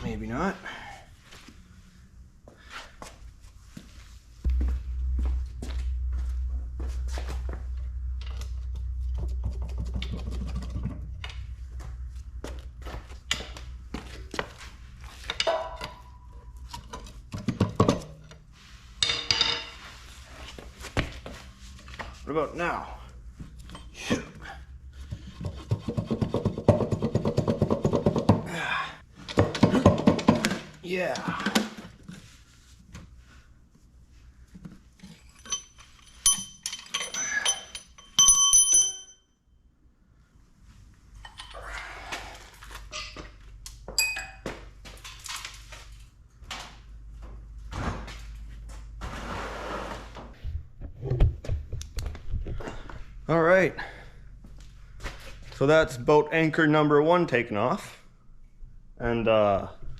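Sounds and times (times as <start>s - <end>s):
heavier thuds: 4.4s - 13.3s
metal clanks and knocks: 4.5s - 13.7s, 15.2s - 18.4s, 19.0s - 19.8s
metal tools clinking and clanking: 19.0s - 19.8s, 35.0s - 39.2s.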